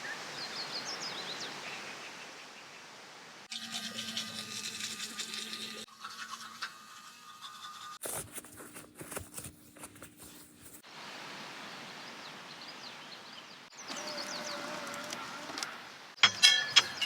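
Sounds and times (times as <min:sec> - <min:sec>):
small birds chirping: 0:11.8 - 0:17.0.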